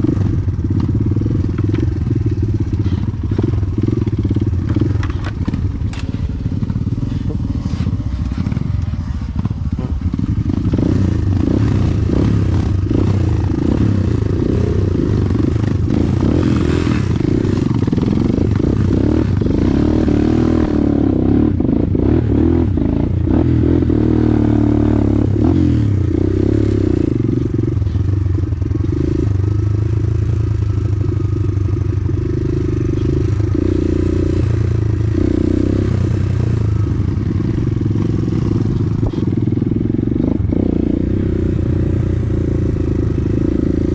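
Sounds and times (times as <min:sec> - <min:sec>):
motorcycle engine running: 0:00.0 - 0:43.9.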